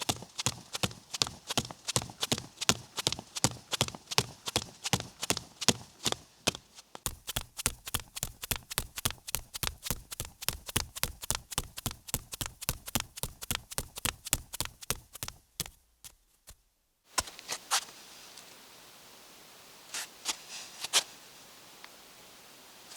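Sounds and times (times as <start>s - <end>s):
rapid footsteps: 0.0s - 16.7s.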